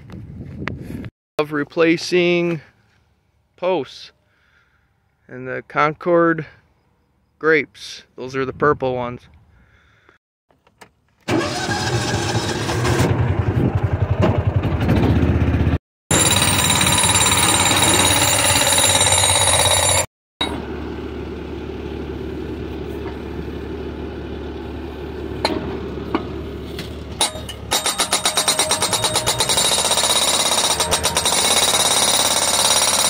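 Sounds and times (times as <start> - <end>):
engine-driven machinery running: 11.3 - 33.0
post driver pounding: 16.1 - 20.1, 27.2 - 33.0.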